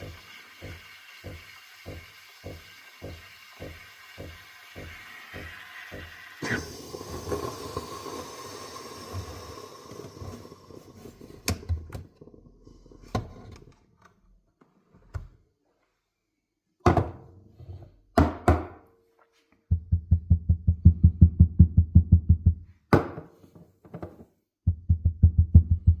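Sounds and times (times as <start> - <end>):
steam wand hissing: 0.0 - 11.4.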